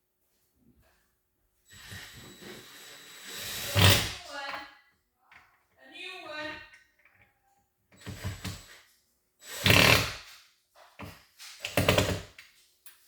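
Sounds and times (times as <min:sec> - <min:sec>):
power drill driving screws: 0:01.7 - 0:04.2, 0:08.0 - 0:08.8, 0:09.4 - 0:10.3.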